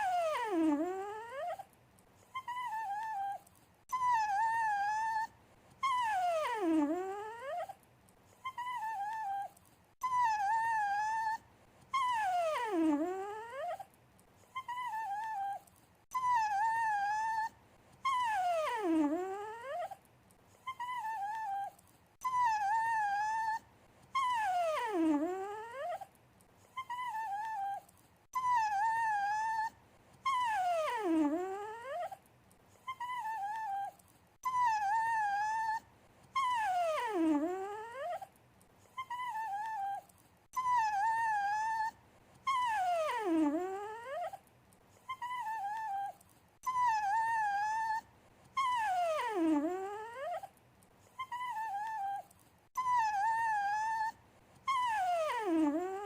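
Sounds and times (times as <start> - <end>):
dog whining and whimpering: 0.0 - 56.0.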